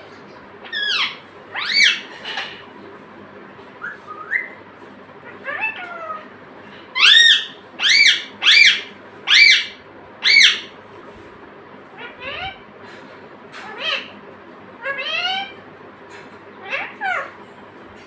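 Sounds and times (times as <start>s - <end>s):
parakeet shrill screeches: 0.6s - 2.1s, 7.0s - 10.7s.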